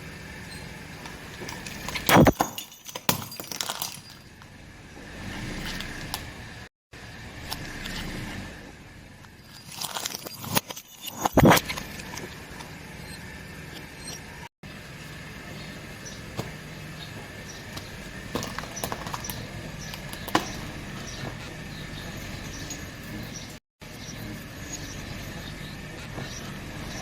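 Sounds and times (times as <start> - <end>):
tyre crushing objects: 0.0 - 6.5, 14.7 - 23.6.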